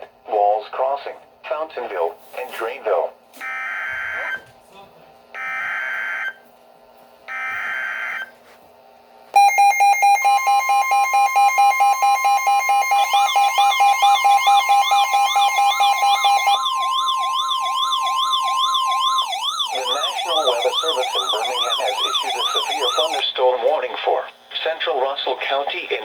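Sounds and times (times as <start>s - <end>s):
rapid pulsing beep: 9.4s - 23.2s
screechy digital data bursts: 9.4s - 23.2s
steady warning tone: 9.4s - 23.2s
warbling siren-like sweep: 9.4s - 23.2s.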